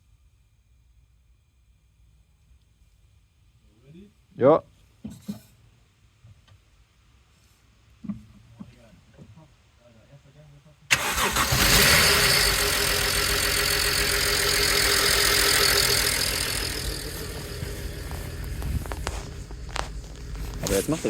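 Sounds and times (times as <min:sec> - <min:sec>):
car engine starting and running: 0:10.9 - 0:21.0
person talking: 0:20.6 - 0:21.0.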